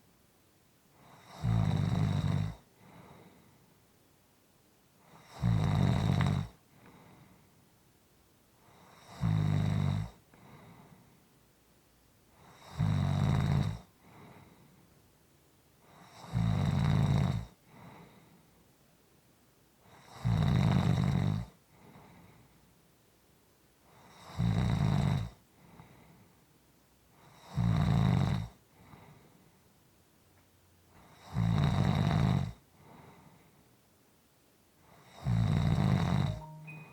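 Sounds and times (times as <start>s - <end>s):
loud snoring: 1.0s - 2.6s, 5.1s - 6.6s, 8.8s - 10.2s, 12.4s - 13.9s, 15.9s - 17.5s, 19.9s - 21.5s, 24.1s - 25.4s, 27.3s - 28.6s, 31.0s - 32.6s, 35.0s - 36.4s
soft breathing: 2.8s - 3.8s, 6.7s - 7.7s, 10.3s - 11.4s, 14.0s - 15.0s, 17.6s - 18.7s, 21.7s - 22.8s, 25.5s - 26.5s, 28.7s - 29.8s, 32.7s - 33.8s.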